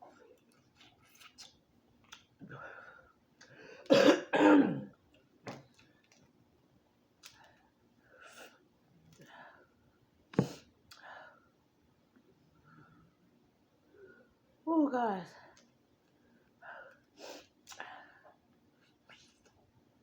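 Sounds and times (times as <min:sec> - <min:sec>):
woman coughing: 0:03.9 - 0:04.9
soft breaths and sighs: 0:07.2 - 0:11.6, 0:15.2 - 0:19.7.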